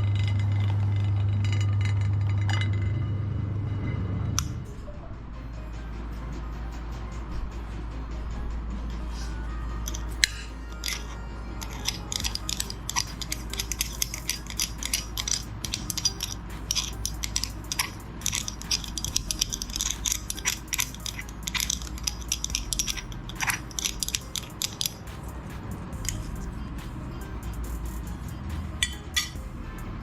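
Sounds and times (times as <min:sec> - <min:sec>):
low motor hum: 0:00.0 - 0:30.0
grinder crunching ice cream: 0:10.8 - 0:25.0.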